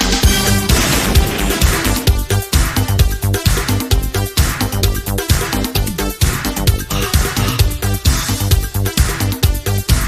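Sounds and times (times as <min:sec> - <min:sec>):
electronic dance music: 0:00.0 - 0:10.0.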